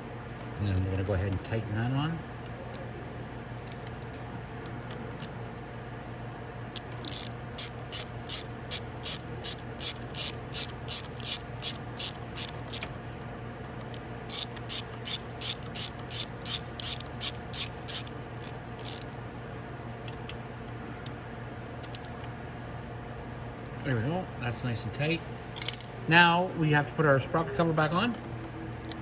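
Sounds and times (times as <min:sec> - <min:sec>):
socket ratchet clicking: 0:06.8 - 0:12.9, 0:14.3 - 0:19.1, 0:25.6 - 0:25.9.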